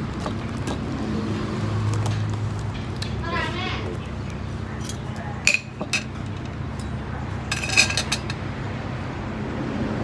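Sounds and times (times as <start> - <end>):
dishes and cutlery clinking: 4.7 - 8.5.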